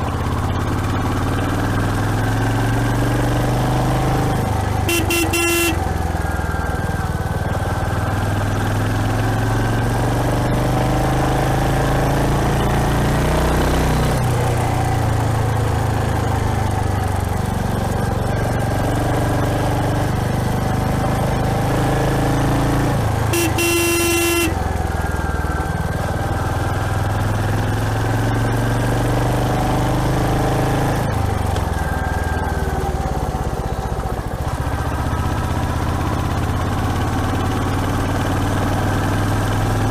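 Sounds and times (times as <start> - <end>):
motorcycle engine running: 0.0 - 39.9
wind and road noise: 0.0 - 39.9
horn: 4.9 - 5.8, 23.3 - 24.6.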